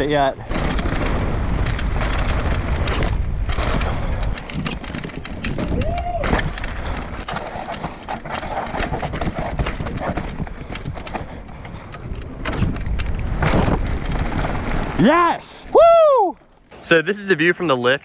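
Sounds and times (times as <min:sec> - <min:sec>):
steady low rumble: 0:00.0 - 0:07.2
bike clattering over rock: 0:00.0 - 0:18.0.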